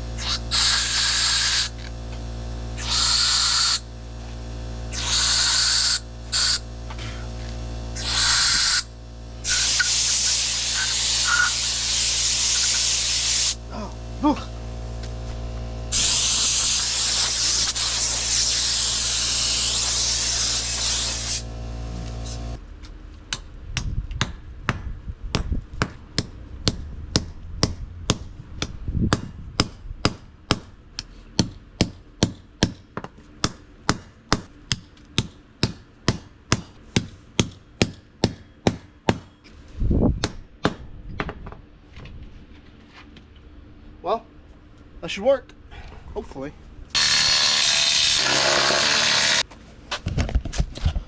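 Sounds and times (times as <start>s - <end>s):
compressed air hissing: 0.0s - 1.8s, 2.8s - 3.9s, 4.9s - 7.3s, 8.0s - 13.6s, 15.9s - 21.5s
steady hum: 0.0s - 39.0s.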